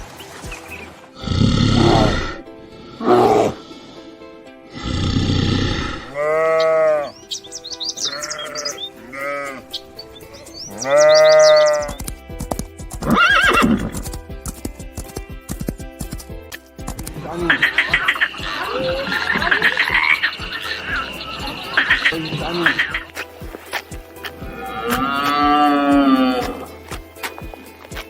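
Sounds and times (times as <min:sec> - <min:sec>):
background music: 0:00.0 - 0:28.0
farm animal calls: 0:01.2 - 0:02.4, 0:03.0 - 0:04.0, 0:04.8 - 0:12.1, 0:13.0 - 0:14.0, 0:17.1 - 0:28.0
high bird chirps: 0:06.5 - 0:12.0, 0:17.5 - 0:23.3.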